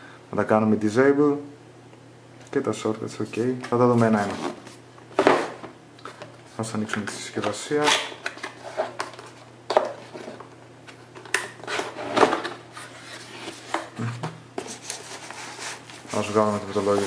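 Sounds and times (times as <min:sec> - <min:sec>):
low steady hum: 0:00.0 - 0:17.0
cardboard packaging rustling: 0:14.6 - 0:17.0.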